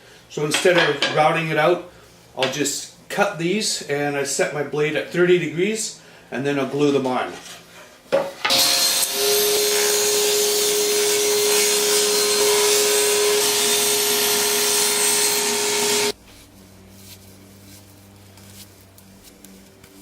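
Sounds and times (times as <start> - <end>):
power saw whine: 8.5 - 16.2
saw cutting wood: 8.5 - 16.2.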